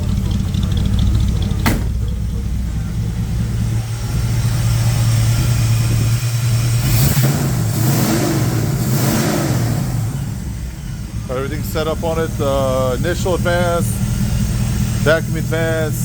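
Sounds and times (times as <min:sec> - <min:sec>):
car engine running: 0:00.0 - 0:16.0.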